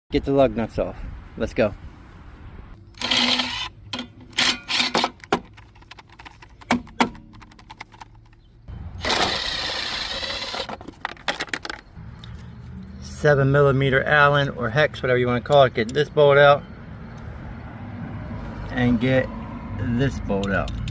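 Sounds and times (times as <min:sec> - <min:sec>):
impact wrench running: 0:03.0 - 0:05.3, 0:09.0 - 0:10.8.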